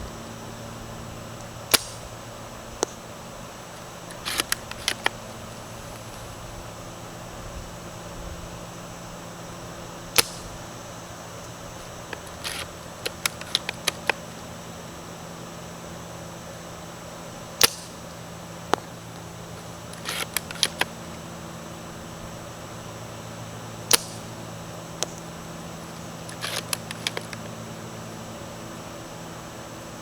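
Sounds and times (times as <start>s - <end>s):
rifle bolt clicking: 1.7s - 2.0s, 4.1s - 5.2s, 11.8s - 14.3s, 17.6s - 18.0s, 19.6s - 21.1s, 23.9s - 24.3s, 25.9s - 27.5s
airsoft rifle shots snapping: 1.7s - 2.2s, 4.0s - 5.4s, 10.1s - 10.6s, 11.4s - 14.4s, 17.6s - 21.2s, 23.8s - 24.4s, 25.0s - 27.6s.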